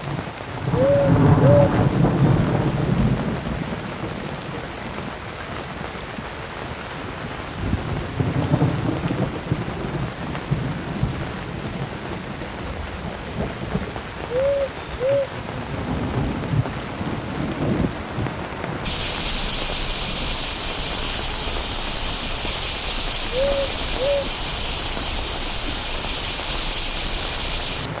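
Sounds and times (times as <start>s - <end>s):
low rumbling thunder: 0.0s - 4.8s, 7.6s - 28.0s
cricket chirping: 0.0s - 28.0s
heavy rain: 0.0s - 28.0s
owl hooting: 0.7s - 2.0s, 14.3s - 15.4s, 18.9s - 27.9s.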